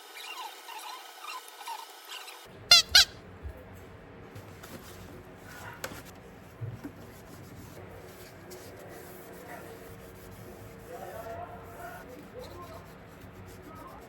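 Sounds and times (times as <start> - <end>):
high-pitched squeaks: 2.7 - 3.2
faint knocks and rustles: 3.4 - 8.6.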